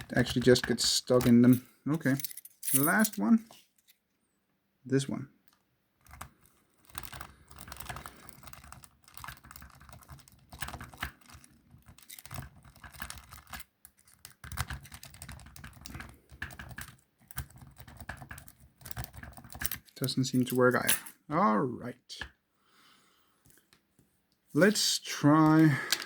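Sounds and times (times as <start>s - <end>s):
key clicking and scraping in lock: 0.0s - 4.0s, 5.5s - 21.2s.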